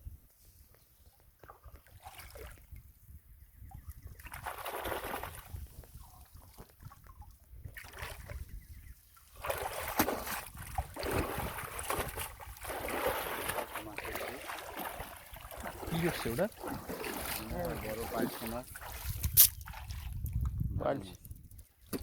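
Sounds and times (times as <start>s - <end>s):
river water splashing: 4.2s - 5.6s, 9.2s - 20.1s.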